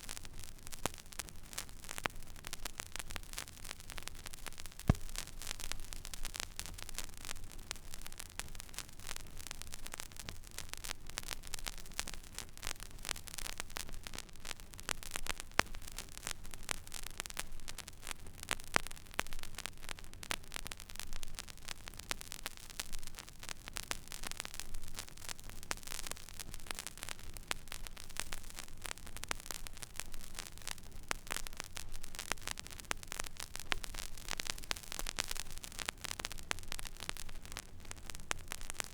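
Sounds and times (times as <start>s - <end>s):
record surface hiss: 0.0s - 38.9s
vinyl record crackle and pops: 0.0s - 38.9s.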